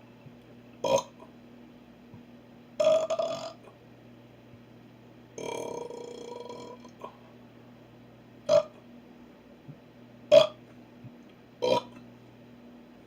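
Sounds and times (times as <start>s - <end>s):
person burping: 0.8s - 1.1s, 2.8s - 3.7s, 5.4s - 7.1s, 8.5s - 8.8s, 10.3s - 10.6s, 11.6s - 12.0s.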